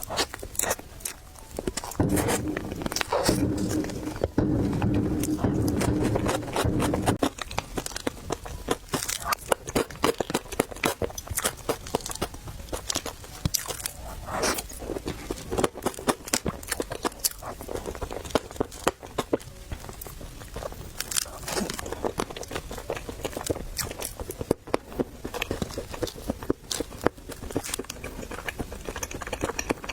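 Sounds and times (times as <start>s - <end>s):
low steady hum: 0.0s - 16.3s
chewing crunchy food: 0.0s - 29.9s.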